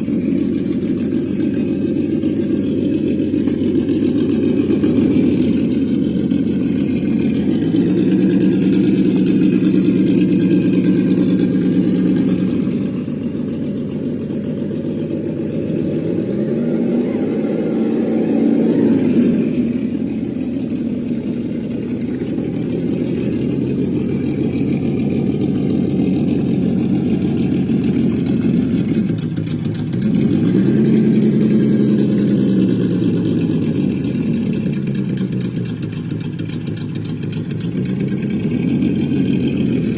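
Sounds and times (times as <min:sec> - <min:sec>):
simulated engine revving: 0:00.0 - 0:39.9.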